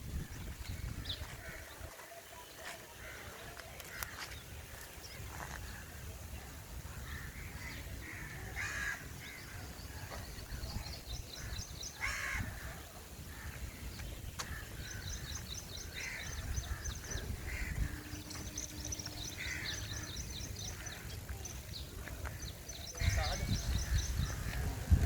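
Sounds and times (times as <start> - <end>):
harsh bird calls: 7.2 - 24.8.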